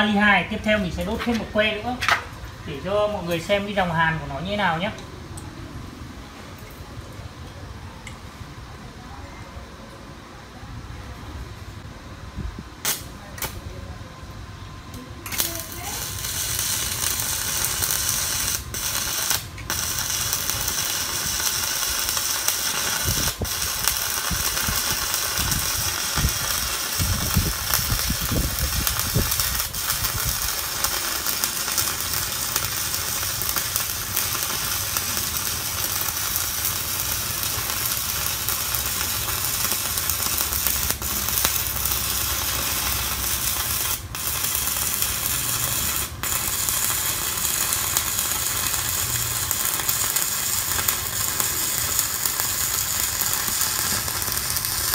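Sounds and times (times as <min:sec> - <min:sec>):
welding arc crackling: 0:12.8 - 0:13.7, 0:14.9 - 0:54.9.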